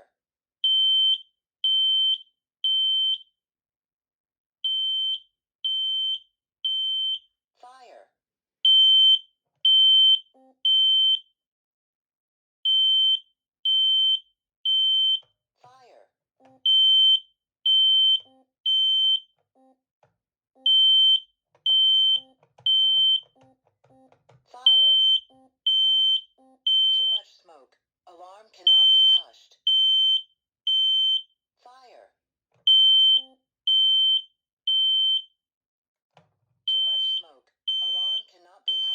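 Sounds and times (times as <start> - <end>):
smoke alarm high-pitched beeps: 0.6 - 3.3, 4.6 - 7.3, 8.7 - 11.3, 12.7 - 15.3, 16.7 - 19.3, 20.7 - 23.4, 24.6 - 27.2, 28.7 - 31.3, 32.7 - 35.3, 36.7 - 38.9.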